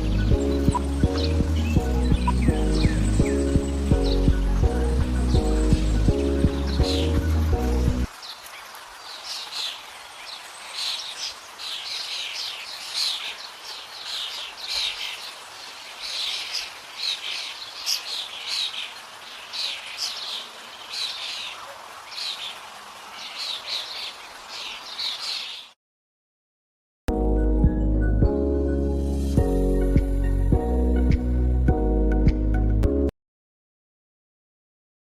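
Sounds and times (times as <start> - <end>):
small birds chirping: 0.0 - 25.8.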